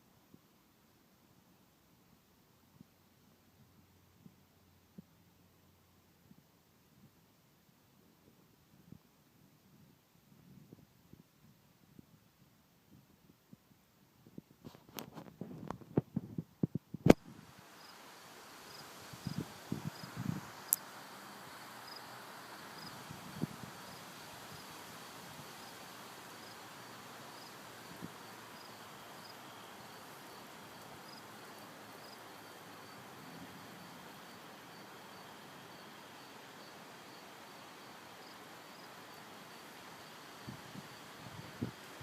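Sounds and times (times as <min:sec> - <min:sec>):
outdoor hiss: 0:00.0 - 0:42.0
cricket chirping: 0:17.8 - 0:24.8, 0:25.6 - 0:42.0.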